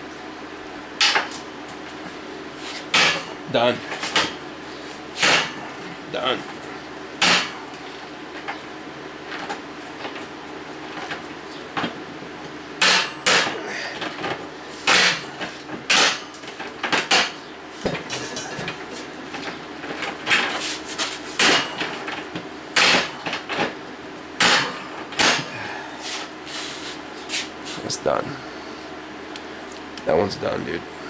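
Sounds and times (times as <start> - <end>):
metal tools clanking: 12.8 - 20.6.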